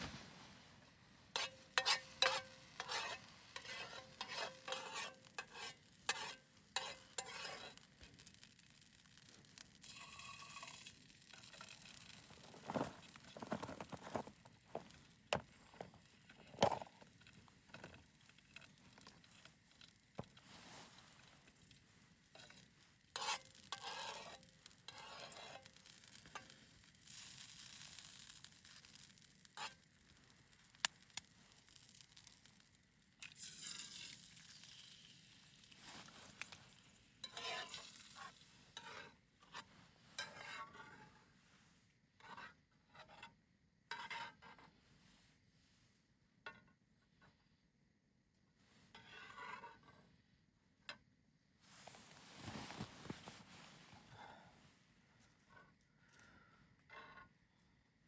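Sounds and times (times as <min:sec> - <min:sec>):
handling rustling and scraping: 0:00.0 - 0:32.4, 0:35.6 - 0:43.3, 0:48.7 - 0:50.1, 0:51.6 - 0:54.1.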